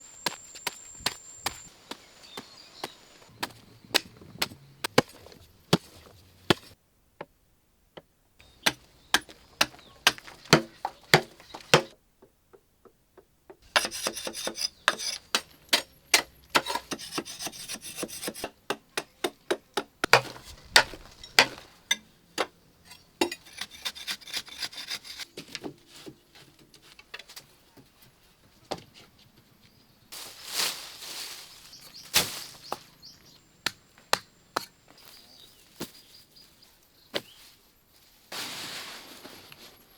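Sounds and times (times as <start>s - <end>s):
wood rubbing and scraping: 13.7s - 15.8s, 16.5s - 18.6s, 20.0s - 21.8s.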